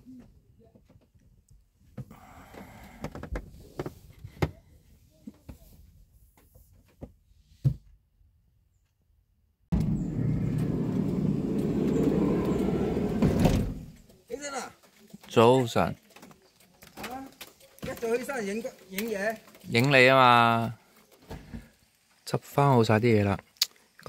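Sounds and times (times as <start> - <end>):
loud low rumbling: 9.7 - 13.9.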